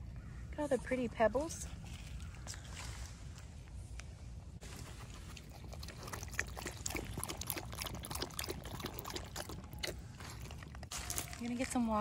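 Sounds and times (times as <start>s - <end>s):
creek trickling: 4.8s - 12.0s
dog lapping water: 4.9s - 10.9s.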